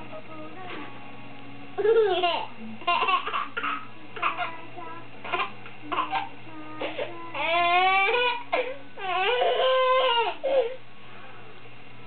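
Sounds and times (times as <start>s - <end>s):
baby wailing: 7.4s - 10.8s.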